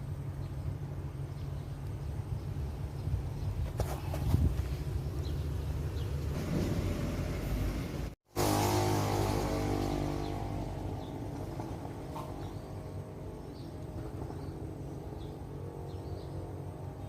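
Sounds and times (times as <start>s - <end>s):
small birds chirping: 0.0s - 6.4s, 9.8s - 17.0s
low engine hum: 0.0s - 17.0s.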